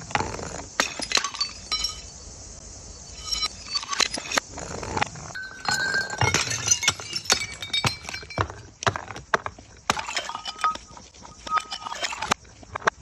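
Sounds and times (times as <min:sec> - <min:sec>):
glass bottles breaking: 0:00.8 - 0:02.1, 0:05.4 - 0:09.0, 0:09.9 - 0:10.9.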